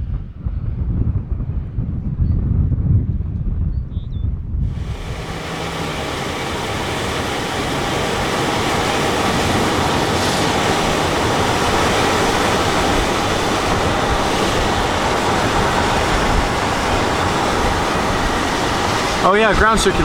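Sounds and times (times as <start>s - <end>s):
wind: 0.0s - 20.0s
rain: 4.7s - 20.0s.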